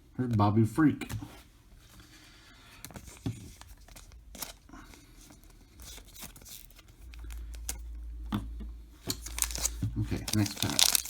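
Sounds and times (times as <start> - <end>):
trading cards rustling and tapping: 5.3 - 11.0
foil wrapper crinkling: 9.1 - 11.0.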